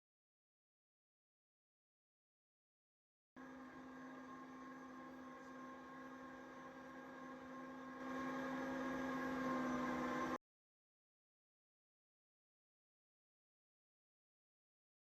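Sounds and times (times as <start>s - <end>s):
electrical hum: 3.4s - 10.4s.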